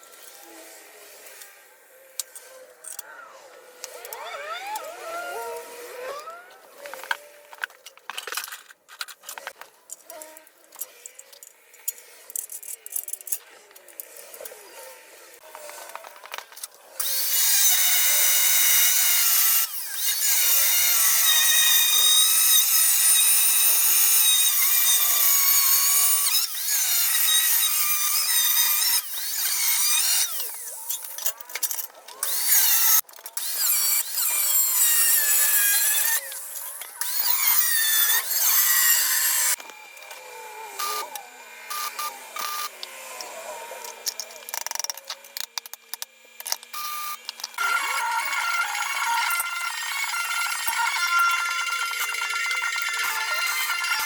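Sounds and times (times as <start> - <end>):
power tool whining: 17.0 - 54.0.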